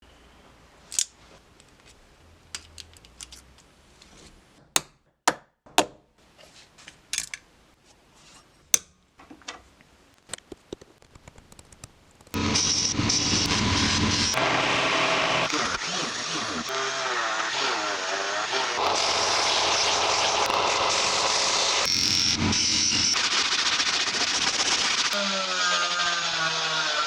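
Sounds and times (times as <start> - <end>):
pistol parts clicking: 0.9 - 1.9, 2.5 - 3.5.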